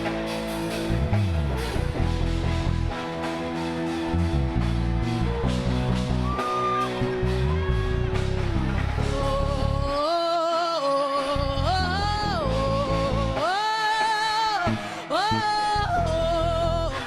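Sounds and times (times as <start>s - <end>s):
low bass accompaniment: 0.0s - 10.0s, 11.4s - 13.4s, 15.4s - 17.0s
solo voice singing with vibrato: 9.0s - 17.0s.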